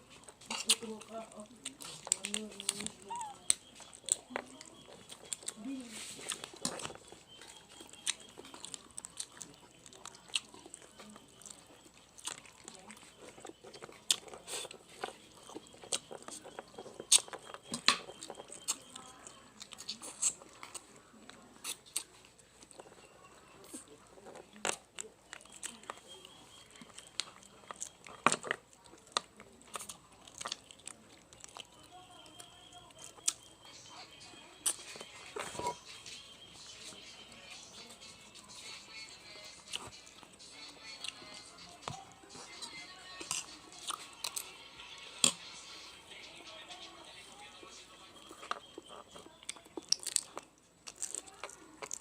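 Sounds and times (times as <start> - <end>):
chewing bony chicken: 0.0 - 52.0
bone crunches: 49.8 - 52.0.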